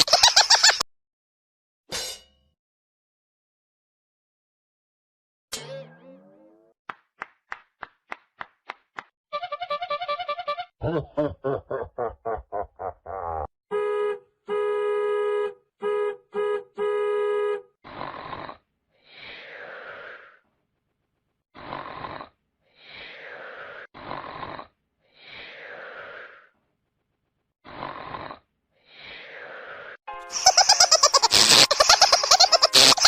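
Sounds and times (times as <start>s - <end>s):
short buzzy honks: 13.7s - 17.8s
comic snoring with whistling breath: 17.8s - 20.4s, 21.6s - 26.6s, 27.6s - 30.0s.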